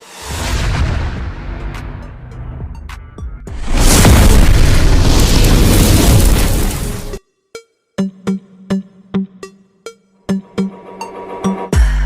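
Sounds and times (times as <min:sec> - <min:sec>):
loud rush: 0:03.5 - 0:07.2
sound effect hits: 0:03.5 - 0:07.2.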